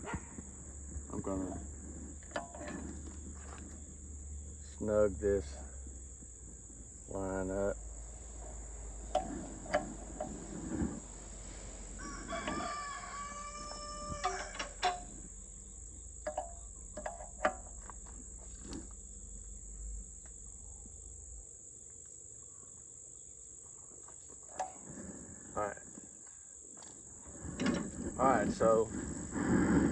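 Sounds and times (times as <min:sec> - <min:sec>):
crickets chirring: 0:00.0 - 0:29.9
rooster crowing: 0:11.9 - 0:15.1.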